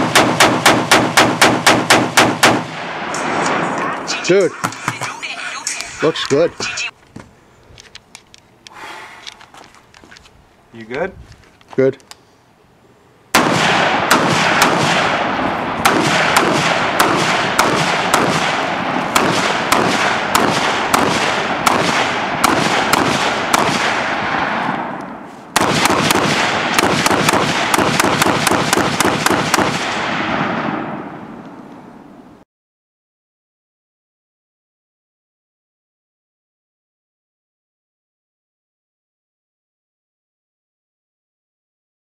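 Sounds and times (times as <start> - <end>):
rifle gunshots with echo: 0.0 - 4.0, 13.3 - 31.6.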